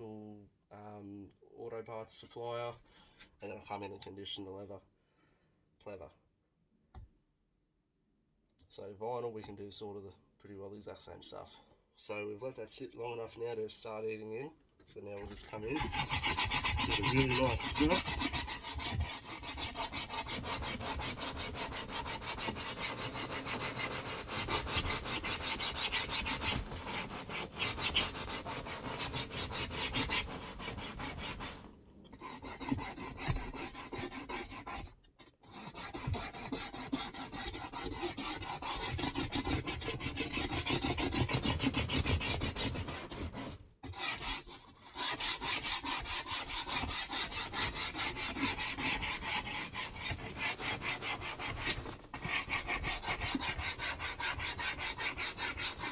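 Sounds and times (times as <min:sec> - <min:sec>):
scrub brush scrubbing vinyl: 0:15.6 - 0:34.9, 0:35.5 - 0:55.9.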